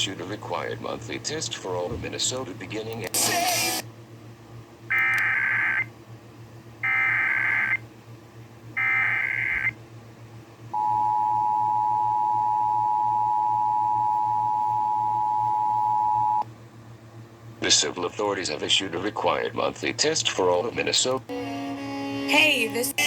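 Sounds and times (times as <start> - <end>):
screeching digital data tones: 4.9 - 5.9, 6.8 - 7.8, 8.8 - 9.8.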